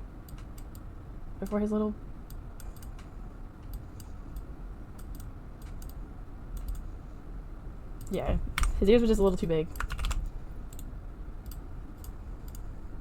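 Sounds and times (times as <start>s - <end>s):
low steady hum: 0.0s - 13.0s
keyboard and mouse clicks: 2.3s - 6.0s, 6.6s - 6.8s, 8.0s - 8.8s, 9.7s - 12.6s.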